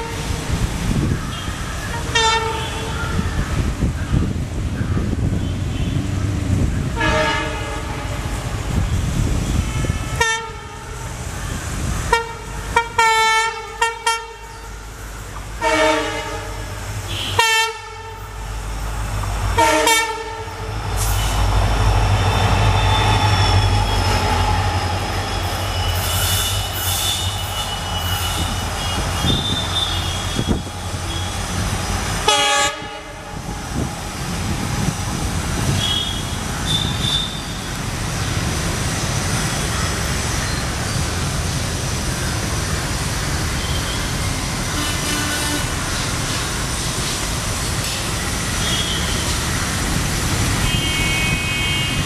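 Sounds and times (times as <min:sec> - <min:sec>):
locomotive engine and wheels rumble: 0:00.0 - 0:52.0
locomotive two-tone horn: 0:02.1 - 0:03.0, 0:07.0 - 0:08.4, 0:09.6 - 0:11.1, 0:12.1 - 0:14.7, 0:15.6 - 0:18.3, 0:19.6 - 0:21.5, 0:22.4 - 0:33.4, 0:35.6 - 0:37.8, 0:44.8 - 0:45.9, 0:48.6 - 0:49.4, 0:50.6 - 0:52.0
high wheel squeal: 0:20.6 - 0:32.2, 0:35.6 - 0:37.8, 0:43.4 - 0:44.6, 0:45.8 - 0:49.8.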